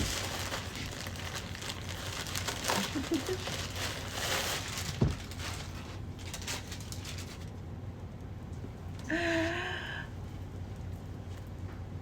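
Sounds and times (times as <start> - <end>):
packaging rustling: 0.0 - 7.6.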